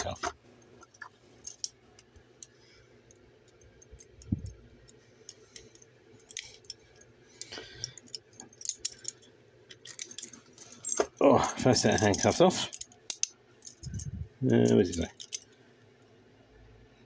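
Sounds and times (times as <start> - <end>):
handcuff metallic clicks: 3.5 - 7.1, 7.8 - 11.2, 11.9 - 14.1, 14.7 - 15.5.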